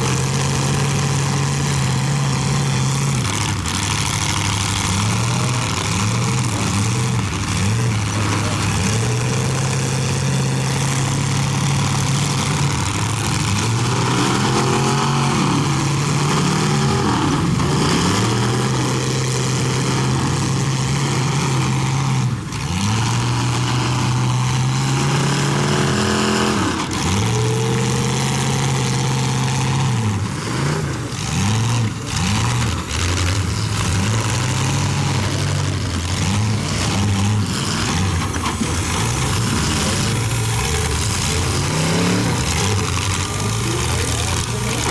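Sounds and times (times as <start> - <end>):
car engines revving: 0.0 - 44.9.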